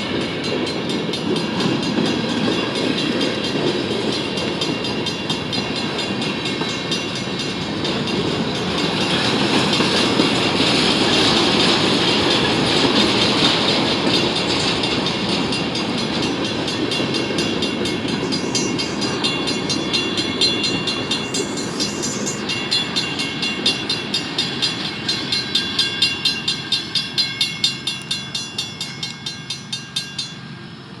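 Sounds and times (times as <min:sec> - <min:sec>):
wheels clacking over rail joint: 0:00.0 - 0:30.4
train wheels rumbling on rails: 0:00.0 - 0:31.0
thin high ringing: 0:18.5 - 0:23.4.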